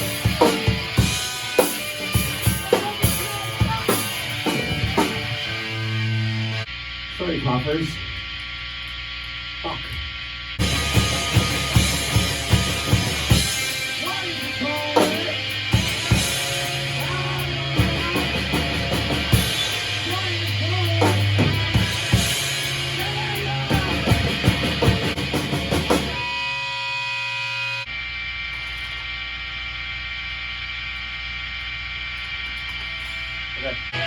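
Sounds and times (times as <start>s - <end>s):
rock band playing: 0.0s - 6.7s, 10.6s - 27.9s
amplifier hum: 0.0s - 34.0s.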